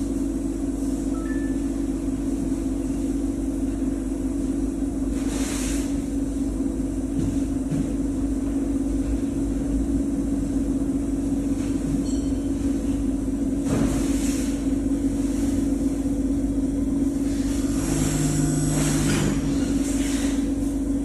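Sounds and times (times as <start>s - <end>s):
grinder machine hum: 14.8s - 21.0s.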